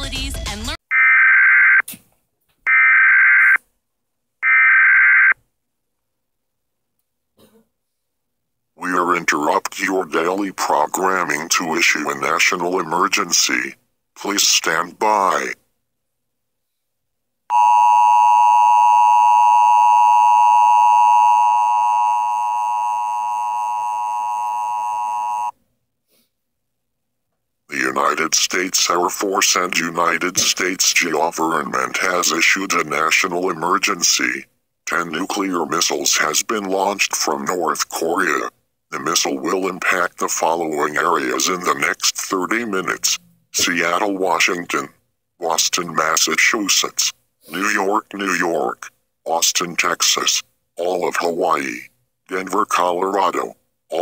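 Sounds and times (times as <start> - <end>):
digital data tone bursts: 17.5 - 25.5.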